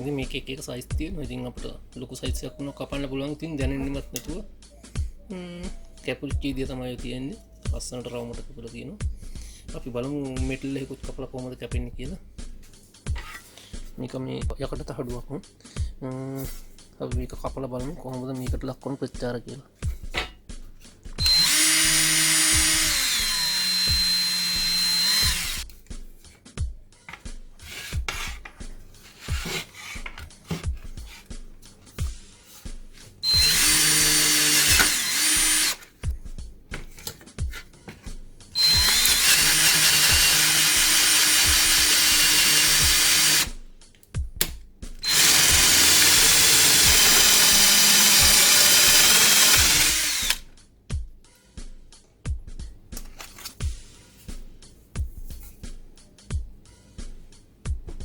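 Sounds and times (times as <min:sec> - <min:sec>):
cordless drill whining: 0:21.2 - 0:25.6, 0:33.2 - 0:35.8, 0:38.6 - 0:43.5, 0:45.0 - 0:50.4.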